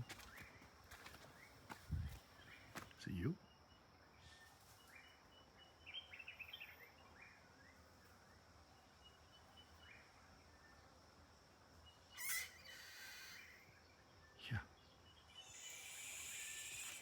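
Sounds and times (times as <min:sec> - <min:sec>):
harsh animal squeal: 0:12.2 - 0:13.6, 0:15.4 - 0:17.0
high squeaky animal chirps: 0:12.2 - 0:13.6.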